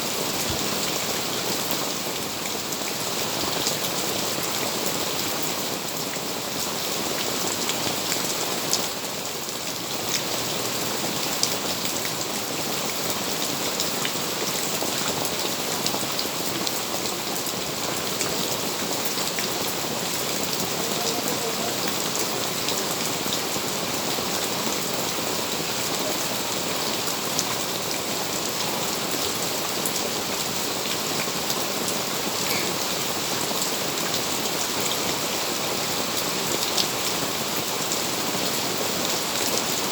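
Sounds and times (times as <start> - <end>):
steady rain hiss: 0.0 - 39.9
raindrops ticking: 13.8 - 28.2.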